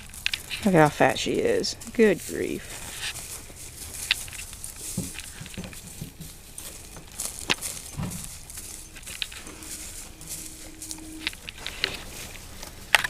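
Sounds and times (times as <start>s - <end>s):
faint steady hum: 0.0s - 13.0s
goats jostling and feeding: 0.0s - 13.0s
sharp clicks and knocks: 3.0s - 9.6s.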